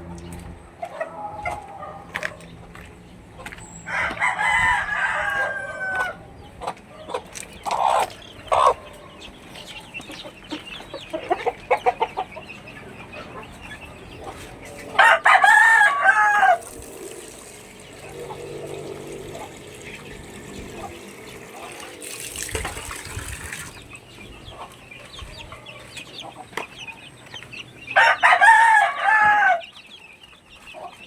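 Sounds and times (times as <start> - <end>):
chicken clucking: 0.0 - 31.0
rooster crowing: 3.9 - 6.3, 15.0 - 17.1, 28.0 - 29.8.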